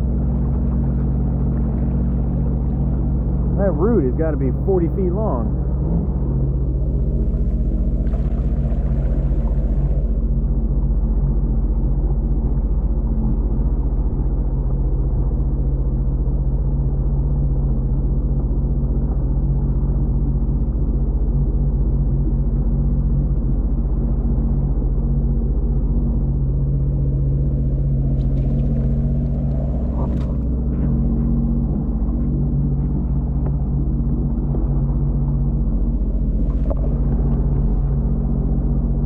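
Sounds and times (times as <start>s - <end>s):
jet ski engine droning: 0.0s - 39.0s.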